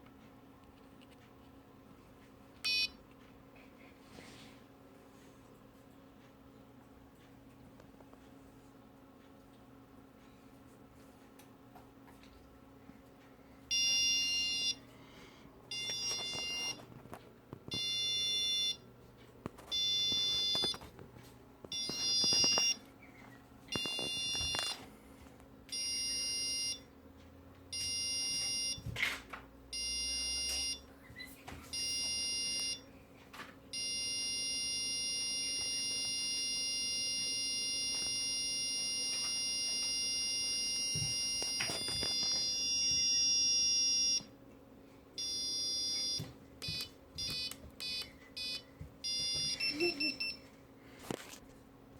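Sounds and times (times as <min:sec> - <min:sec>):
shrill electronic alarm buzzer: 0:13.7 - 0:14.8, 0:15.7 - 0:16.8, 0:17.7 - 0:18.8, 0:19.7 - 0:20.8, 0:23.7 - 0:24.8, 0:25.7 - 0:26.8, 0:27.7 - 0:28.8, 0:29.7 - 0:30.8, 0:31.8 - 0:32.8, 0:33.8 - 0:44.3, 0:45.2 - 0:50.4.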